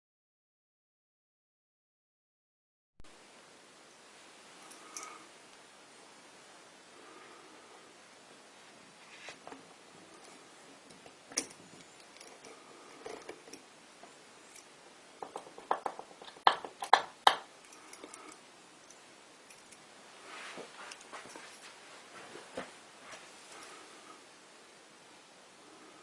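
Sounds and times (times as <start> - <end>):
small parts and tools clicking: 10.1 - 13.7, 14.5 - 19.9, 20.8 - 21.7.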